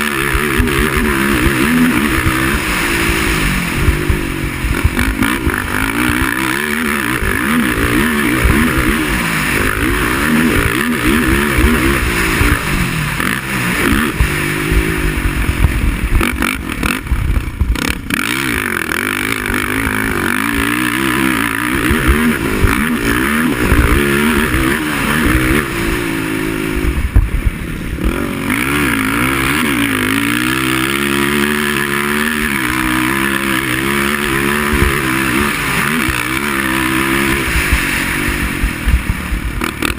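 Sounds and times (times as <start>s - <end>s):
quad engine revving: 0.0s - 39.9s.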